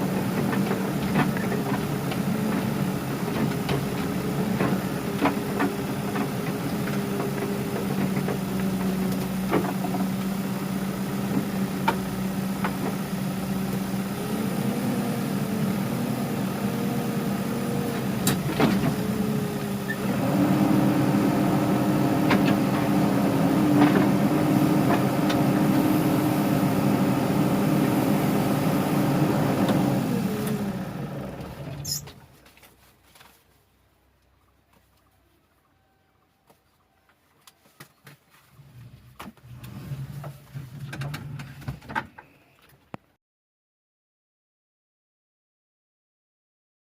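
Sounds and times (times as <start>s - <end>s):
diesel engine running: 0.0s - 32.4s.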